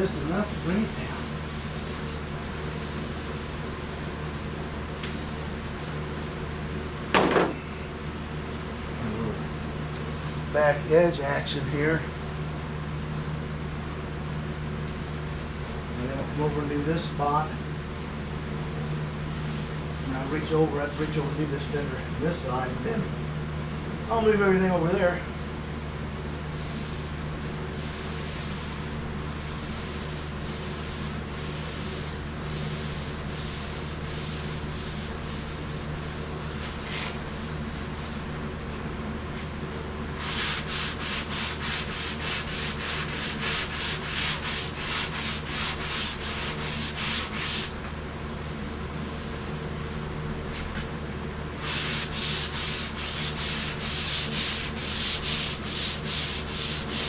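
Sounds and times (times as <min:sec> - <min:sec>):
hand sanding strokes: 0:00.0 - 0:06.4, 0:18.9 - 0:21.9, 0:26.5 - 0:38.4, 0:40.1 - 0:50.1, 0:51.6 - 0:57.0.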